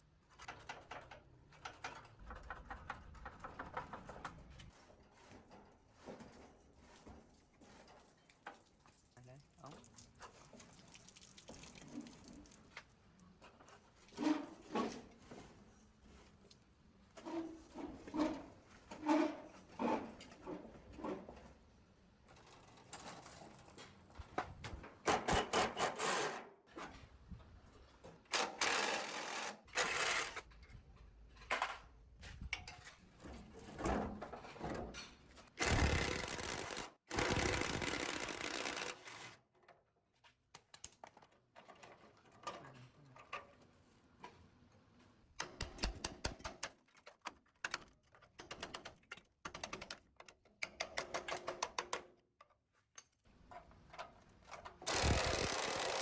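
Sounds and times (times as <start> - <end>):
hand tools clicking and knocking: 45.4 - 53.2.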